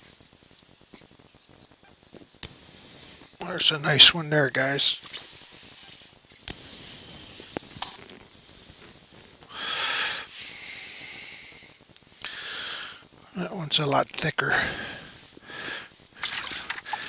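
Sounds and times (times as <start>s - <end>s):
person breathing: 9.5s - 13.0s, 14.5s - 17.0s.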